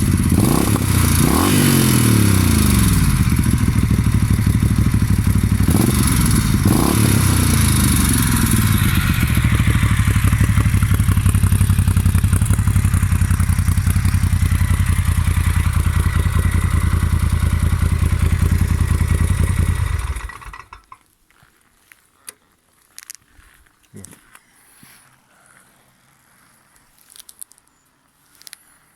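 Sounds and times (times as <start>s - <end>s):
motorcycle engine revving: 0.0s - 20.8s.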